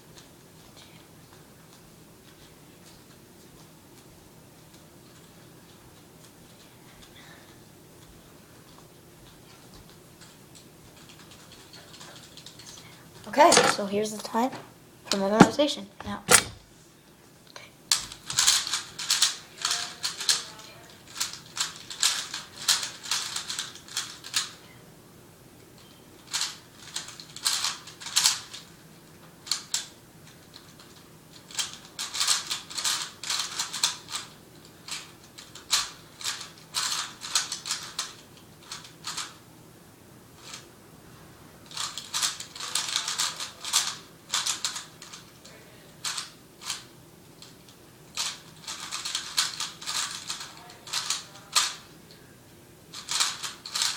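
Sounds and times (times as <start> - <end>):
plastic puzzle cube clicking: 48.2 - 51.8, 53.0 - 53.9.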